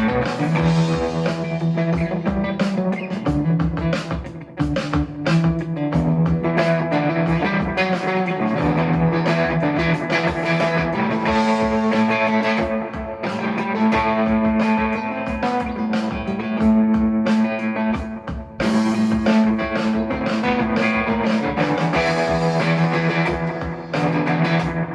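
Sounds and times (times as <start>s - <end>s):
overdriven electric guitar chords: 0.0s - 24.9s.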